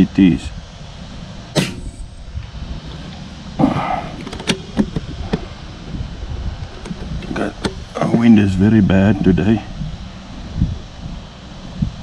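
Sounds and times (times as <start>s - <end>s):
wind rumble on microphone: 0.0s - 12.0s
air rifle firing: 1.6s - 2.2s
small clicks and knocks: 4.2s - 5.4s.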